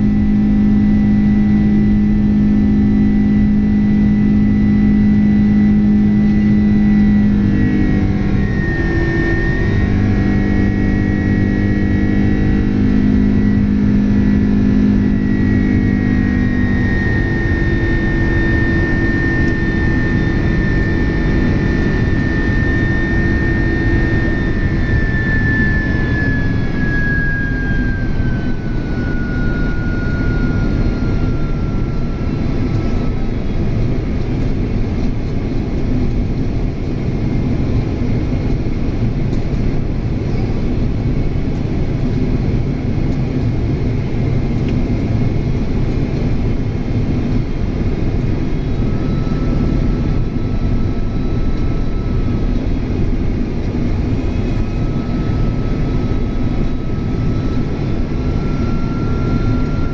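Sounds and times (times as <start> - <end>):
jet engines low rumble: 0.0 - 59.9
thin high engine whine: 0.0 - 59.9.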